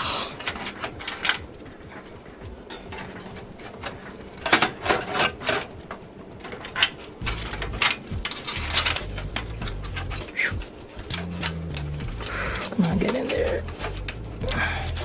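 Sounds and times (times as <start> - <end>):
computer parts clicking into place: 0.4 - 15.0
low handling rumble: 7.2 - 15.0.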